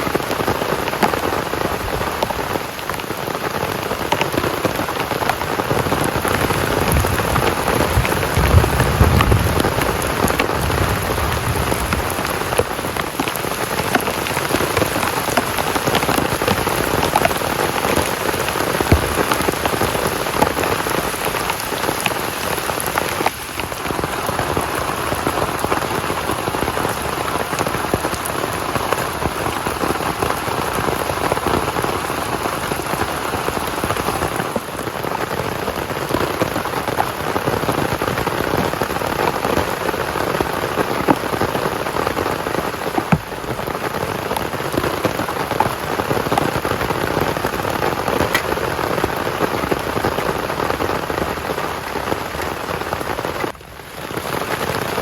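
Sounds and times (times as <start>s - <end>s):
heavy rain patter: 0.0s - 55.0s
sharp raindrop taps: 0.1s - 53.6s.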